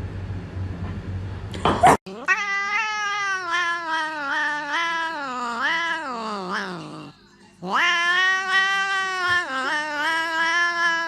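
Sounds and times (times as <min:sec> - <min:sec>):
cat yowling: 0:02.1 - 0:11.0.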